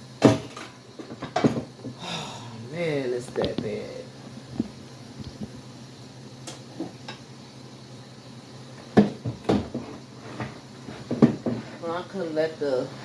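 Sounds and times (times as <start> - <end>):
low steady hum: 0.0 - 8.8
sharp knocks of dishes and cupboards: 9.0 - 9.9, 11.1 - 11.6.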